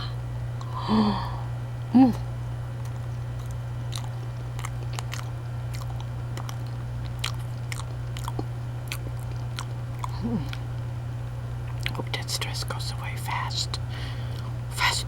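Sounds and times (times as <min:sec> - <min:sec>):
person humming: 0:00.0 - 0:02.3, 0:10.1 - 0:10.6
low hum: 0:00.0 - 0:15.0
person chewing: 0:02.8 - 0:10.9, 0:11.6 - 0:12.2.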